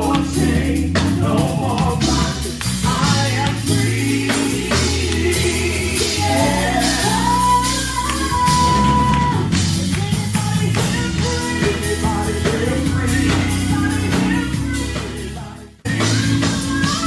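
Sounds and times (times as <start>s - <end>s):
backing band: 0.0s - 17.0s
gospel singing: 0.0s - 17.0s.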